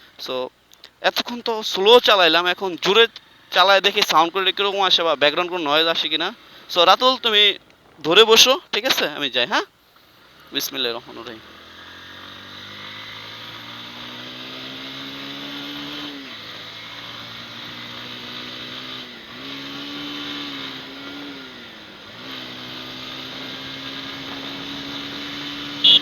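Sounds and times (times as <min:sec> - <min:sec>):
motorcycle engine accelerating: 0:11.2 - 0:26.0.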